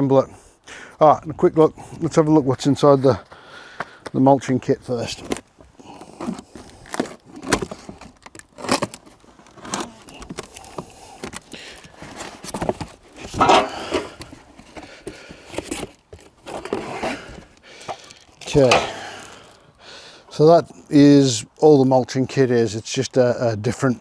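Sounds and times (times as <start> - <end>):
scrapes of unpacking: 5.2 - 19.6
packaging rustling: 6.2 - 19.6
knocks of parts being moved: 12.1 - 19.3.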